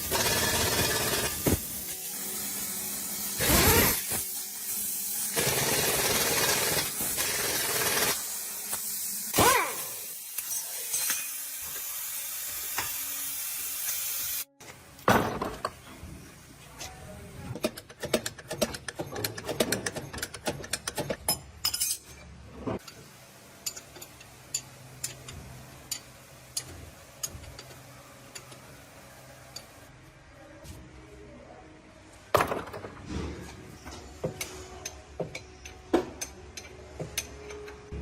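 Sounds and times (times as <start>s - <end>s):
steel tools clinking: 10.4s - 11.8s, 21.2s - 22.3s.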